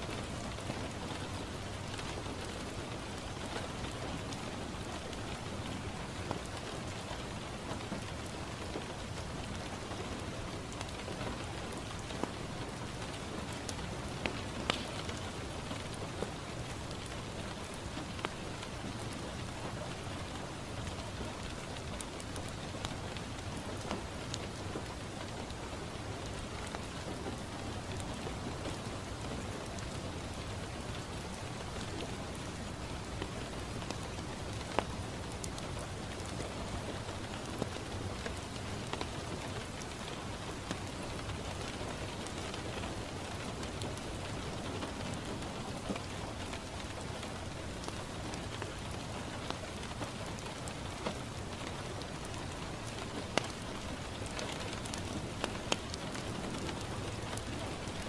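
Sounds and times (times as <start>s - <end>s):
rain on a window: 0.0s - 58.0s
sharp pops and ticks: 14.2s - 15.2s.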